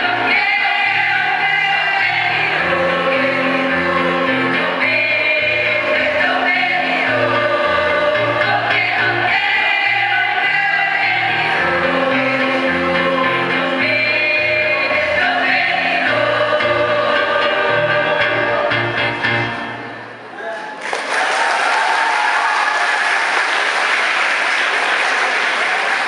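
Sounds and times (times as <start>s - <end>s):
choir singing long chords: 0.0s - 19.8s.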